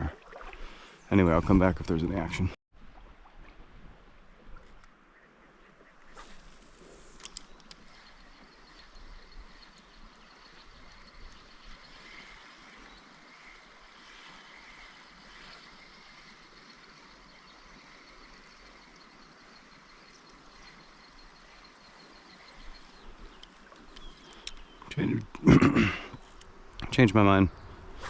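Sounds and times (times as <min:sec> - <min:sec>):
running water hiss: 0:06.1 - 0:28.0
insects high steady tone: 0:06.6 - 0:24.7.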